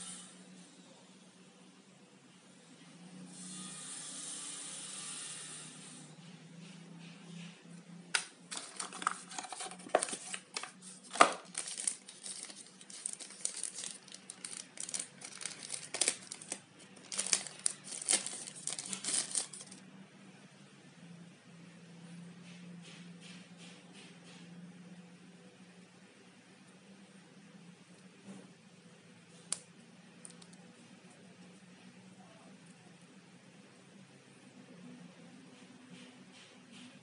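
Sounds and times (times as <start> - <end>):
packaging crinkling: 8.2 - 19.8.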